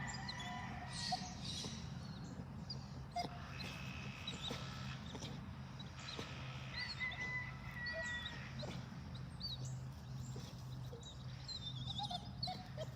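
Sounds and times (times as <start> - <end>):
animal whining: 0.0 - 12.9
animal chirping: 10.4 - 12.9.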